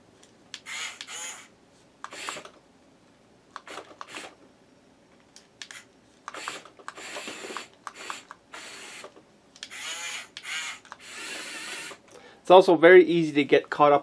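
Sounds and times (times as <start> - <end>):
toy motors whirring with clicks: 0.5 - 2.6, 3.6 - 4.4, 5.6 - 12.1.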